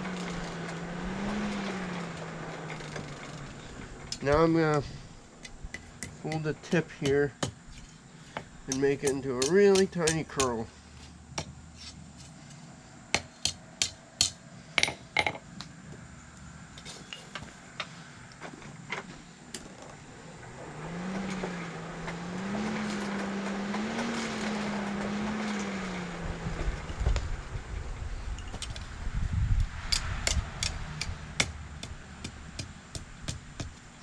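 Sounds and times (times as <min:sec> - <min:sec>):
steady low hum: 0:00.0 - 0:34.0
hammer striking steel on anvil: 0:08.7 - 0:10.6.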